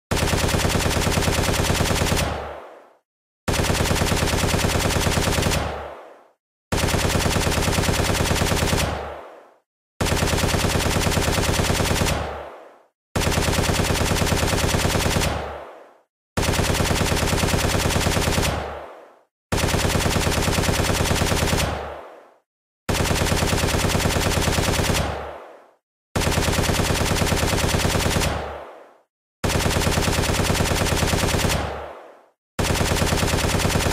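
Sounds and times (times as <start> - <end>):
rifle automatic fire bursts: 0.1 - 2.6, 3.5 - 5.9, 6.7 - 9.2, 10.0 - 12.5, 13.2 - 15.6, 16.4 - 18.8, 19.5 - 22.0, 22.9 - 25.4, 26.2 - 28.7, 29.4 - 31.9, 32.6 - 33.9.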